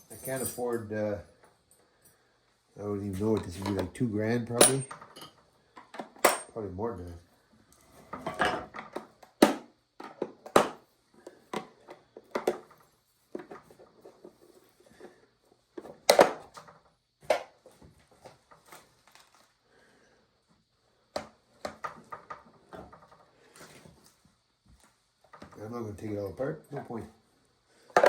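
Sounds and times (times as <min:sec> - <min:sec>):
hard objects knocking and clunking: 0:08.1 - 0:14.4.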